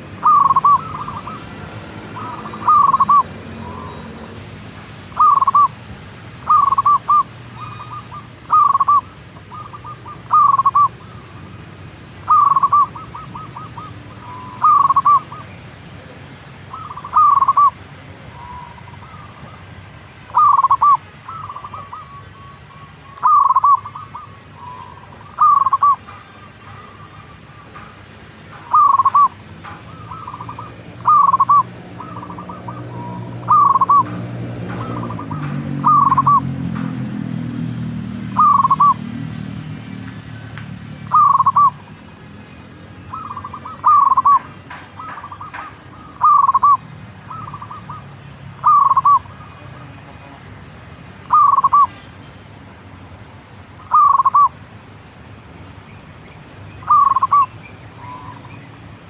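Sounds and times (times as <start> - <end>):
dove cooing: 0.0 - 4.0, 5.1 - 5.8, 6.4 - 11.4, 12.2 - 15.5, 16.7 - 19.6, 20.3 - 27.2, 28.6 - 36.6, 38.3 - 39.2, 41.1 - 41.8, 43.1 - 50.2, 51.2 - 51.9, 53.8 - 54.6, 56.8 - 58.5.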